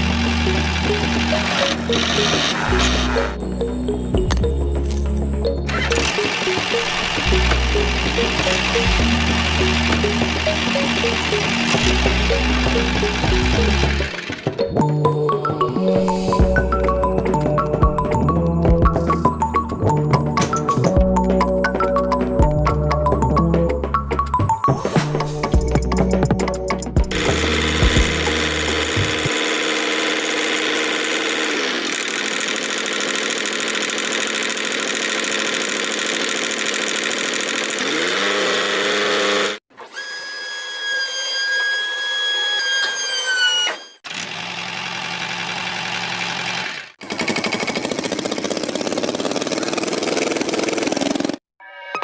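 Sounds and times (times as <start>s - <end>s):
high steady motor whine: 0.0s - 3.4s, 5.7s - 14.4s, 27.1s - 39.6s
small motors humming: 0.0s - 17.5s, 27.0s - 51.4s.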